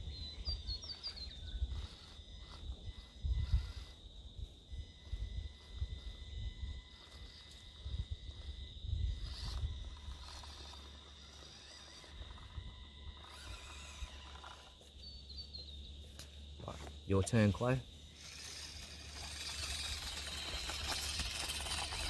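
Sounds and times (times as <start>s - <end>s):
wind rumbling on microphone: 0.0s - 10.8s
small electric motor and gears: 0.0s - 15.1s, 17.3s - 22.0s.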